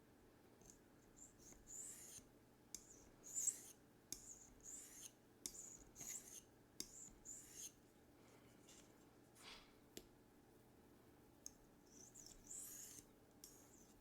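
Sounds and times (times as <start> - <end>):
knife scraping on sharpening stone: 2.8 - 7.8, 11.9 - 14.0.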